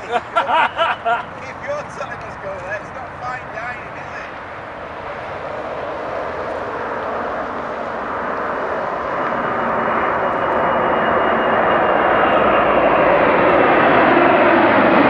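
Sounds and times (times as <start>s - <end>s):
jet engines at takeoff: 0.0s - 15.0s
faint high whine: 1.3s - 13.8s.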